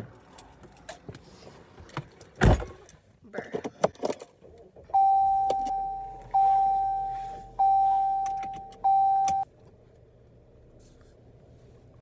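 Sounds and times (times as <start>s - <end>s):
car warning chime dinging: 4.9s - 9.5s.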